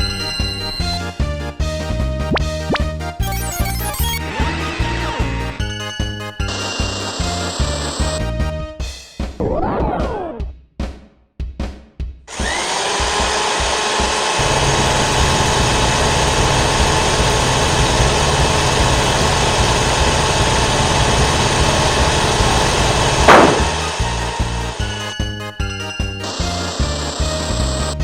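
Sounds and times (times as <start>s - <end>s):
cartoon drill whirring: 3.2s - 4.9s, 12.3s - 25.0s, 26.2s - 27.9s.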